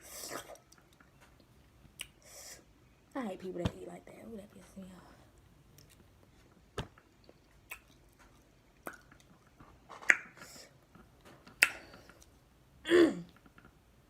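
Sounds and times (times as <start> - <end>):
person chewing food: 5.7 - 12.4
wet mouth smacks: 7.2 - 10.5.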